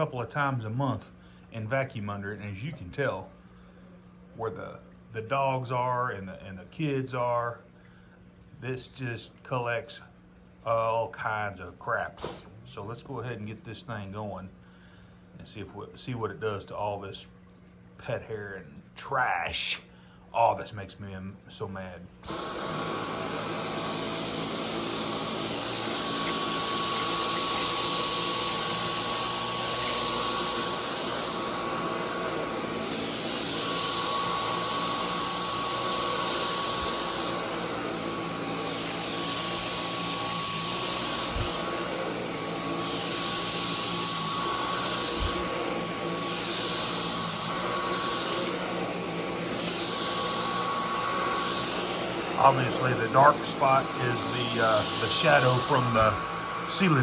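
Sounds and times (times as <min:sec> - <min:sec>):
vacuum cleaner whine: 0:12.2 - 0:12.6, 0:22.2 - 0:57.0.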